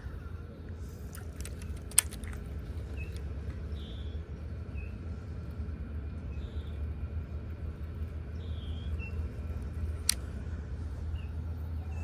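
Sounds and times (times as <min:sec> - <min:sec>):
small bird chirping: 0:08.3 - 0:09.3.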